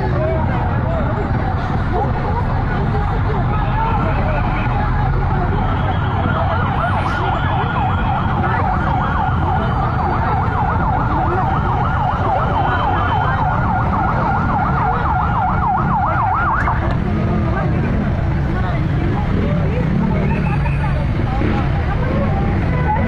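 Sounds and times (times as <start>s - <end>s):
siren yelping: 5.2s - 16.9s.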